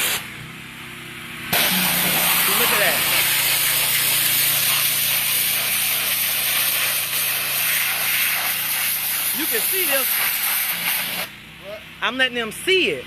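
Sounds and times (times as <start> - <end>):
pressure washer spraying: 0.0 - 0.3, 1.5 - 11.4.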